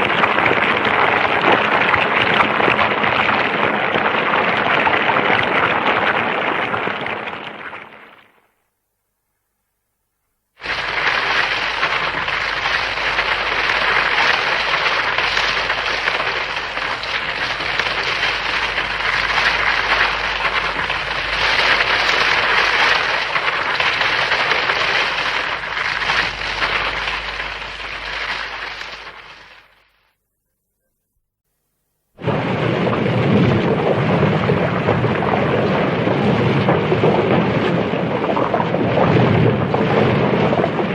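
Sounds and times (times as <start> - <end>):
monster crackling hiss: 10.6 - 29.8.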